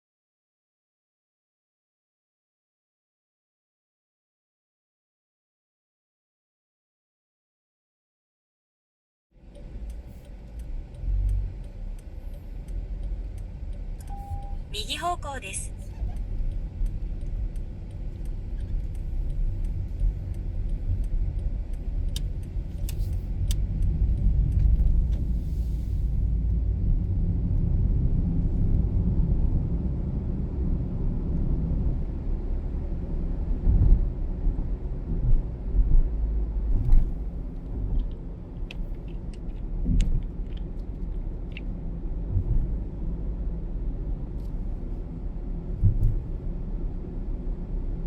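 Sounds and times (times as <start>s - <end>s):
car engine and tyre rumble: 9.3s - 48.0s
faint ticks: 9.5s - 14.5s, 16.2s - 25.2s.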